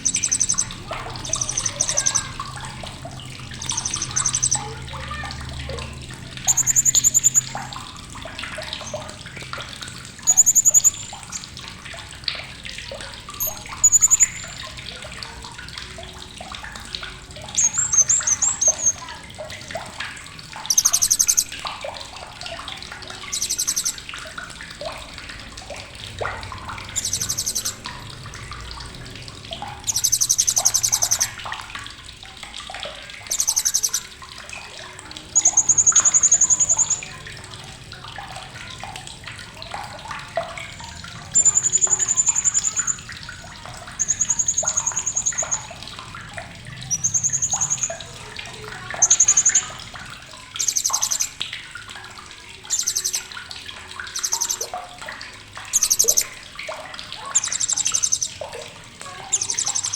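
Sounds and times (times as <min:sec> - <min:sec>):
parrot high-pitched chattering calls: 0:00.0 - 0:07.7, 0:10.2 - 0:11.6, 0:13.4 - 0:14.6, 0:17.5 - 0:19.1, 0:20.7 - 0:21.6, 0:23.2 - 0:24.0, 0:26.9 - 0:27.8, 0:29.8 - 0:31.4, 0:33.3 - 0:34.1, 0:35.3 - 0:37.2, 0:41.3 - 0:43.1, 0:43.9 - 0:45.7, 0:46.8 - 0:49.9, 0:50.6 - 0:51.4, 0:52.7 - 0:53.3, 0:54.1 - 0:54.7, 0:55.7 - 0:56.4, 0:57.1 - 0:58.4, 0:59.0 - 0:59.9
water-like rush: 0:00.0 - 0:59.9.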